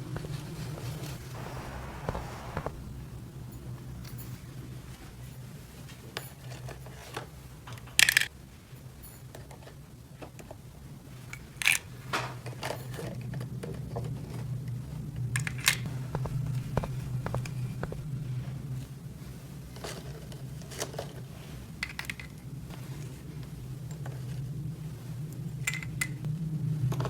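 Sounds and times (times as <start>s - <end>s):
steady low hum: 0.0s - 5.4s, 14.8s - 19.5s, 22.8s - 27.0s.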